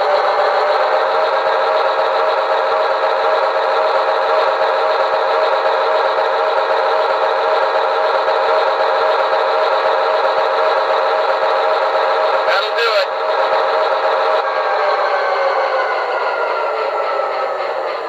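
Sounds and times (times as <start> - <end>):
diesel locomotive engine throbbing: 0.0 - 18.0.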